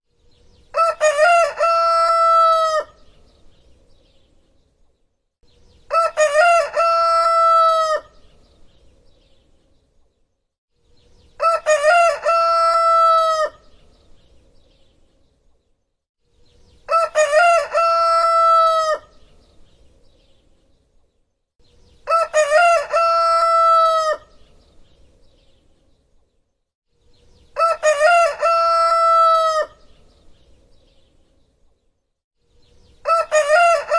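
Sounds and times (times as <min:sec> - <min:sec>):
rooster crowing: 0:00.7 - 0:03.0, 0:05.9 - 0:08.2, 0:11.4 - 0:13.6, 0:16.9 - 0:19.1, 0:22.0 - 0:24.3, 0:27.6 - 0:29.8, 0:33.0 - 0:33.9.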